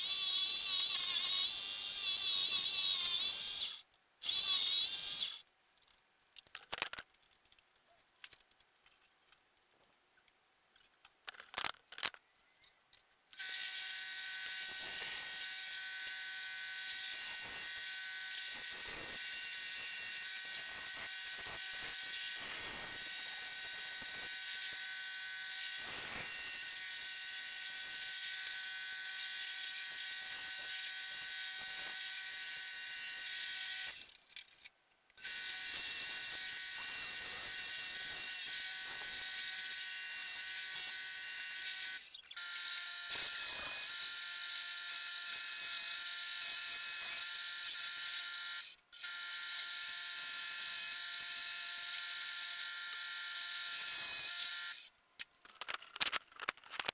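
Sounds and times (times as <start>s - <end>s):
power tool motor whining: 0.0s - 5.4s, 13.4s - 25.0s, 35.2s - 54.9s.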